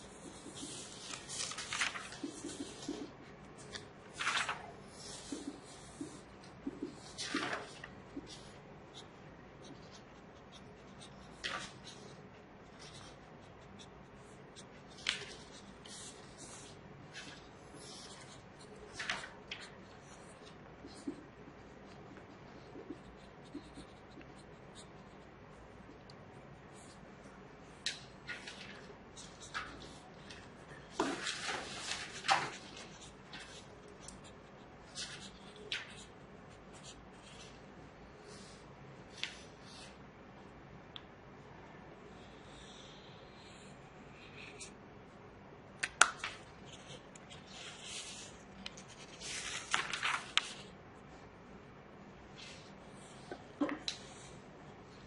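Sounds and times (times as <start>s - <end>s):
marker scratching on paper: 0.0s - 1.4s, 2.1s - 3.7s, 4.9s - 25.9s
page turning with flick: 0.4s - 3.0s, 3.6s - 5.4s, 7.1s - 7.9s, 11.3s - 12.0s, 14.9s - 18.3s, 18.9s - 19.7s, 27.8s - 34.1s, 45.8s - 50.7s.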